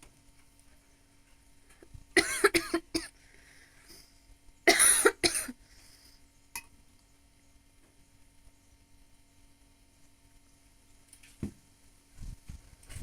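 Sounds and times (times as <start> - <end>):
woman coughing: 2.2 - 3.1, 4.7 - 5.6.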